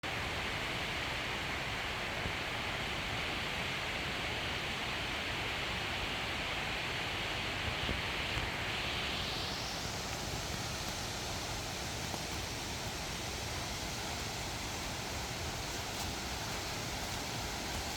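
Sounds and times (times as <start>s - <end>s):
waterfall rushing: 8.5s - 17.9s.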